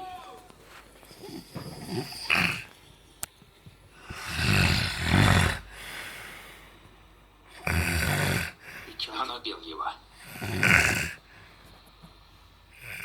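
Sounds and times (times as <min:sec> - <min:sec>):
person snoring: 0:01.2 - 0:02.7, 0:04.0 - 0:05.8, 0:07.5 - 0:08.7, 0:10.2 - 0:11.2, 0:12.8 - 0:13.0.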